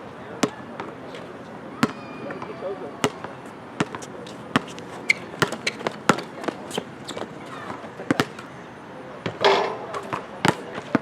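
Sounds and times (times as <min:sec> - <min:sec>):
basketball bouncing on hard court: 0:03.8 - 0:08.4.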